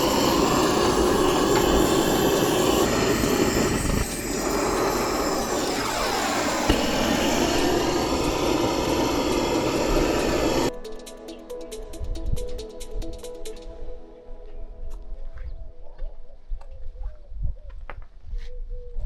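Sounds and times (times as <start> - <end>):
roofing torch burning: 0.0 - 10.7.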